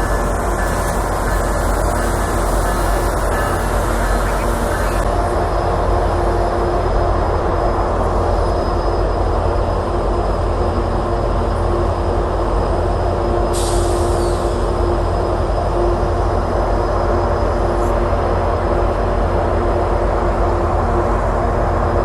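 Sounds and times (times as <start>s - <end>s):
train rumbling: 0.0s - 22.0s
hiss: 13.5s - 14.7s.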